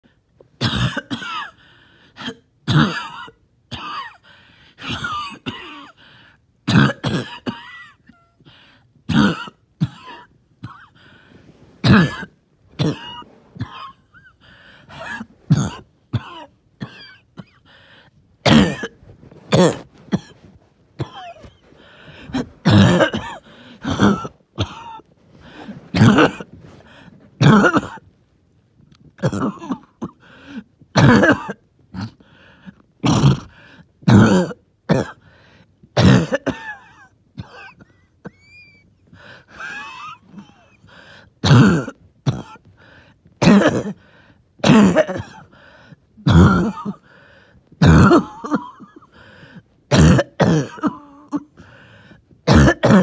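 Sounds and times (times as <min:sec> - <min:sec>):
person coughing: 0:00.6 - 0:01.6, 0:02.2 - 0:06.0, 0:06.6 - 0:08.4, 0:09.1 - 0:17.8, 0:18.4 - 0:28.1, 0:29.1 - 0:32.3, 0:33.0 - 0:35.3, 0:35.9 - 0:53.0
wheezing: 0:10.8 - 0:28.1, 0:37.6 - 0:42.0, 0:42.6 - 0:53.0
throat-clearing: 0:11.8 - 0:17.8, 0:18.4 - 0:28.0, 0:29.0 - 0:32.3, 0:33.0 - 0:35.2, 0:36.0 - 0:42.7, 0:43.4 - 0:45.5, 0:46.2 - 0:47.2, 0:47.8 - 0:51.8, 0:52.4 - 0:53.0.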